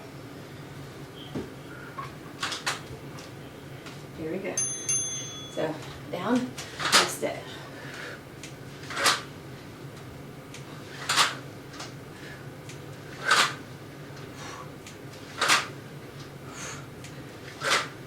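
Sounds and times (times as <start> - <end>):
sharp exhales: 16.5 - 16.9.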